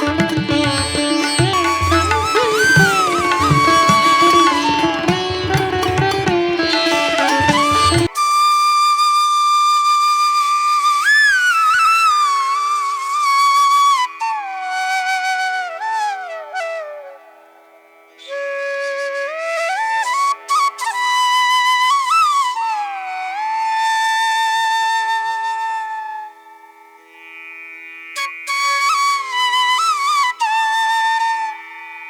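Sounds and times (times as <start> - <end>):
flute melody over a drone: 0.0 - 17.4, 18.3 - 26.6, 28.5 - 32.0.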